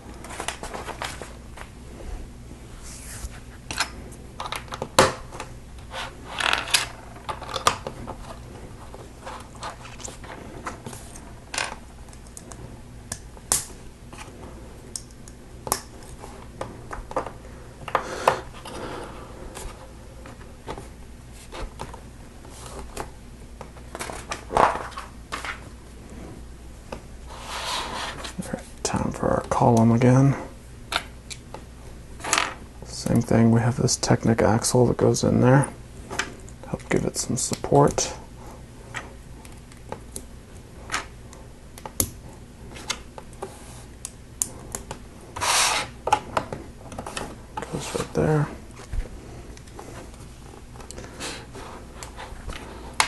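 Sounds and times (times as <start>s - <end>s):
rustling scrapes: 0.2s - 3.7s, 27.3s - 28.6s, 45.3s - 46.0s.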